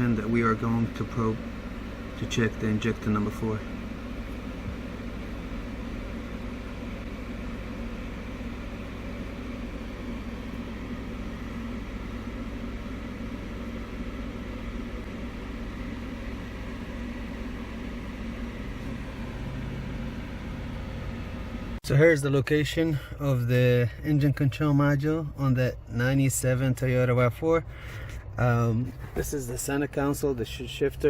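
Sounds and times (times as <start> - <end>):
low mechanical hum: 0.0 - 31.0.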